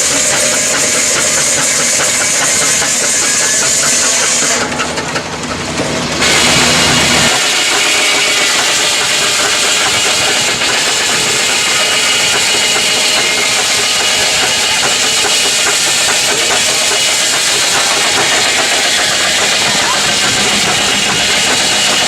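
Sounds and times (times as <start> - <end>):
loud hissing machinery: 0.0 - 22.0
deep engine hum: 8.7 - 22.0.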